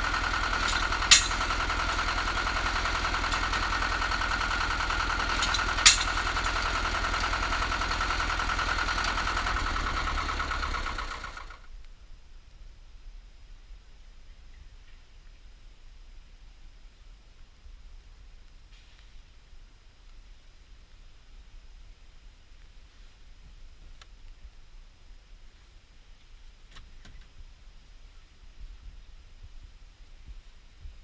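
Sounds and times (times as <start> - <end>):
drilling rig engine pulsing: 0.0 - 11.6
sharp metallic clanks: 0.1 - 7.6.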